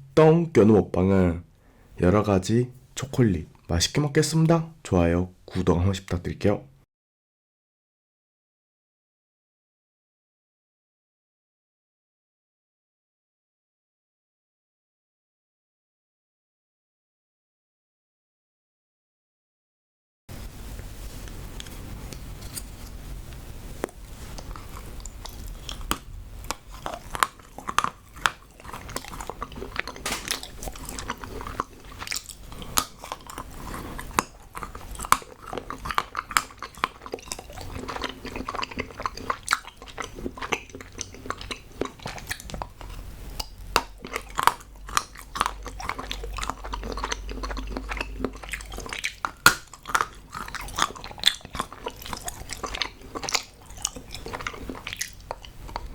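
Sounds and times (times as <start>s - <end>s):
chocolate snapping and crunching: 23.8s - 55.9s.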